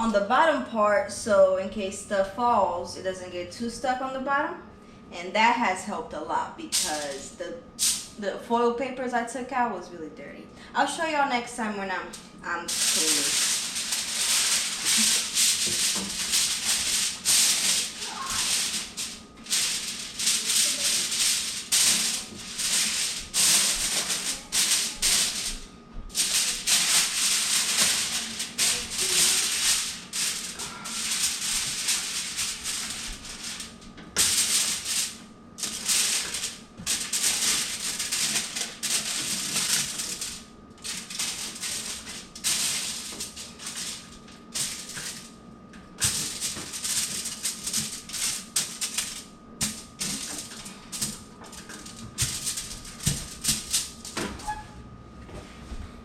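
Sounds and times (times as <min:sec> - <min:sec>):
rough brushing strokes: 0:12.7 - 0:25.5.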